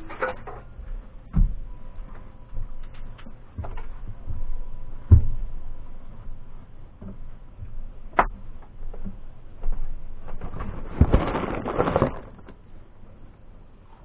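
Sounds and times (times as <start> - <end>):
knocks and thumps: 5.0 - 5.5.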